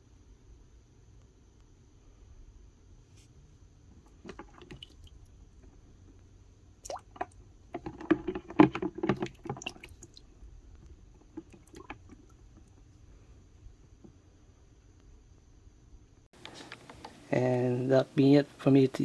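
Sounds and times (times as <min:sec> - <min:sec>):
handling clicks and knocks: 0:07.1 - 0:09.8, 0:16.4 - 0:17.3.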